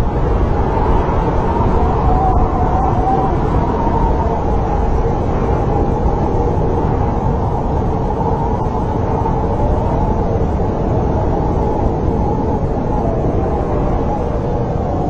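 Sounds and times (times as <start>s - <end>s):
snowstorm wind howling: 0.0s - 15.0s.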